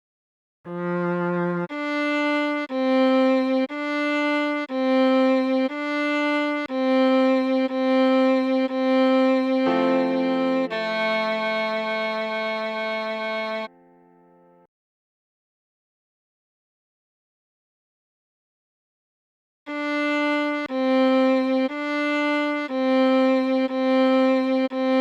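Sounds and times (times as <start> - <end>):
viola playing slow melody: 0.7 - 14.7, 19.7 - 25.0.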